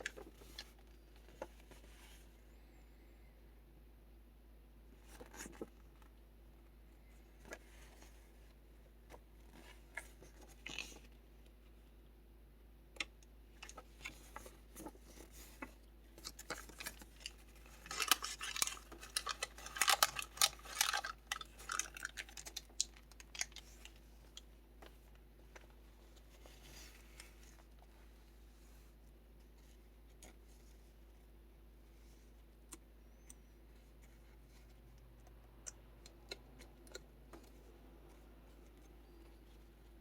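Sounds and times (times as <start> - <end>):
paper crinkling: 13.6 - 24.5
paper pages rustling: 13.6 - 30.9.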